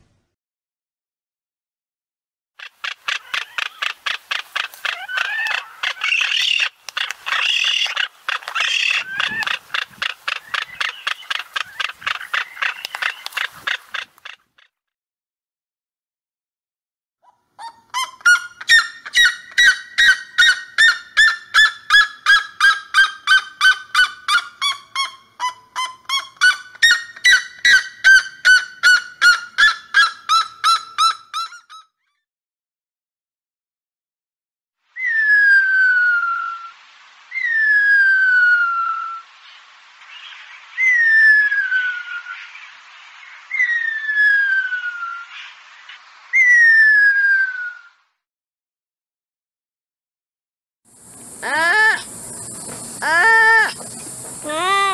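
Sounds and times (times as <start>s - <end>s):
steady hiss: 36.2s - 43.6s, 44.8s - 46.4s.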